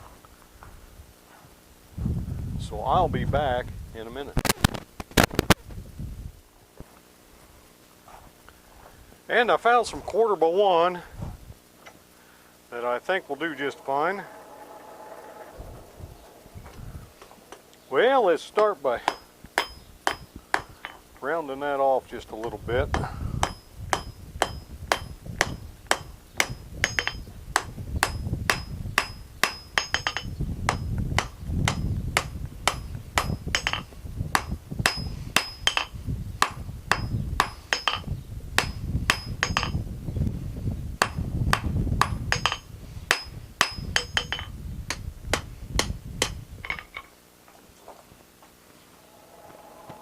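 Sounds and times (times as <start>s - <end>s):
low rumble: 12.6s - 18.2s
hammer striking steel on anvil: 13.0s - 16.5s, 18.5s - 21.0s, 22.4s - 39.8s, 41.0s - 47.0s.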